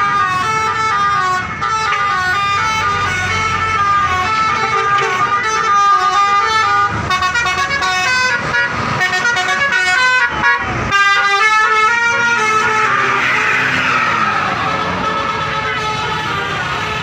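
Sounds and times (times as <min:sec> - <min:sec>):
multi-tone bus horn melody: 0:00.0 - 0:17.0.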